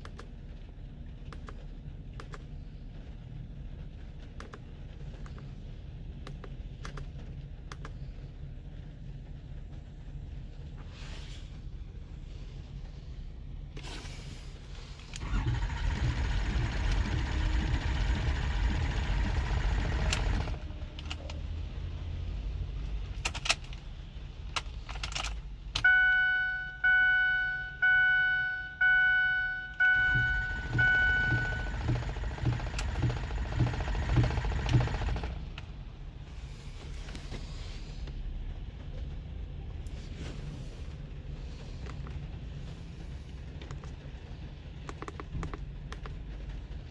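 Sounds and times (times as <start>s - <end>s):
diesel engine cranking: 13.7s - 21.6s, 29.7s - 35.9s
dashboard warning chime: 25.8s - 32.2s.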